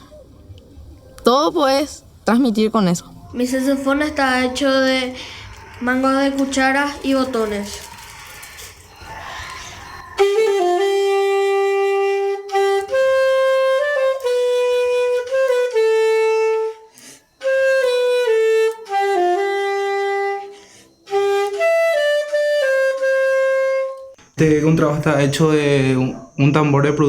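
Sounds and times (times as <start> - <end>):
saxophone solo melody: 10.2 - 20.5, 21.1 - 24.1.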